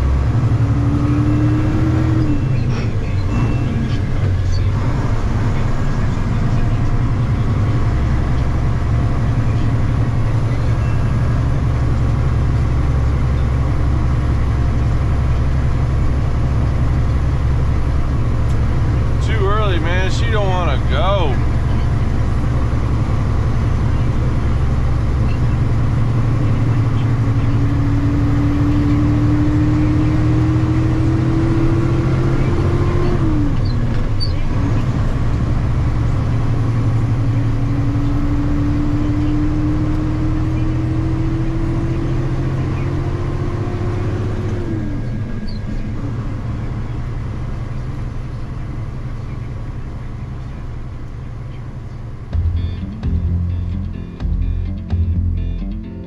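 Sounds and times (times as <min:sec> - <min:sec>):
heavy engine under load: 0:02.4 - 0:26.3
climbing whine: 0:50.3 - 0:56.0.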